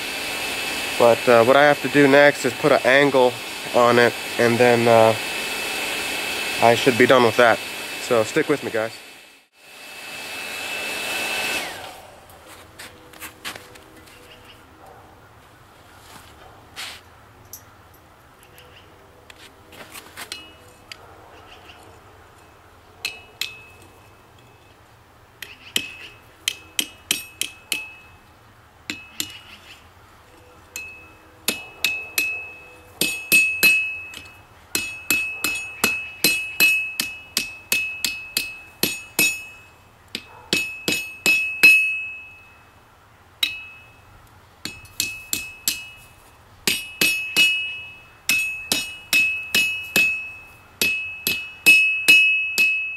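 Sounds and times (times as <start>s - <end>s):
hammer blows on metal anvil: 30.8s - 42.6s, 43.4s - 44.0s, 44.6s - 52.9s.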